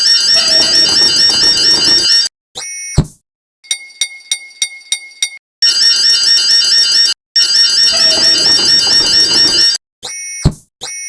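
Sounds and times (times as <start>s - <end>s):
warbling electronic alarm tone: 0.0s - 2.3s, 7.4s - 10.3s.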